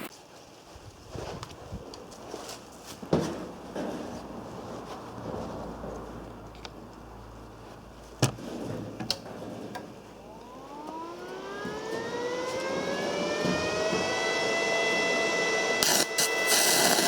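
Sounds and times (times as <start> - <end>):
small electric motor whining: 10.4 - 17.0.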